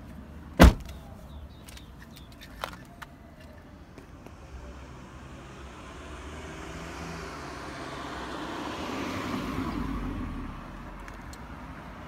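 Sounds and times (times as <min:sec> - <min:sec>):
road vehicle passing: 0:04.3 - 0:12.0.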